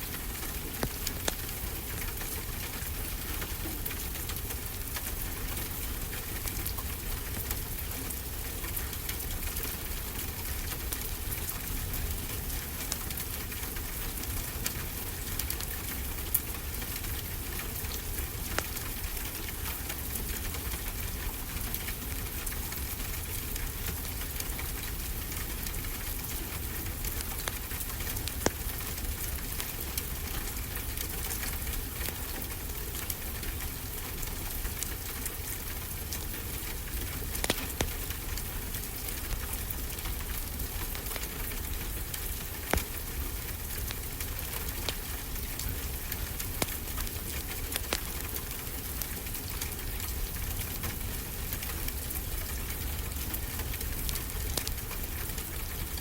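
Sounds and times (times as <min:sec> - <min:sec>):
rain hiss: 0:00.0 - 0:56.0
wood fire crackling: 0:00.0 - 0:56.0
sharp pops: 0:37.4 - 0:37.9.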